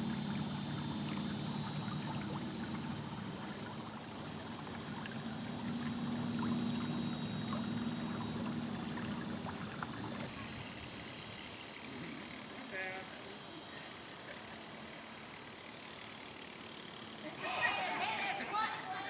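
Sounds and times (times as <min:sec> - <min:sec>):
vehicle motor humming: 0:00.0 - 0:10.3.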